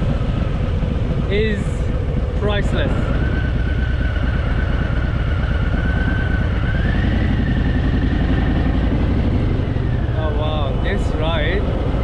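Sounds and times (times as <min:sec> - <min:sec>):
motorcycle engine running: 0:00.0 - 0:12.0.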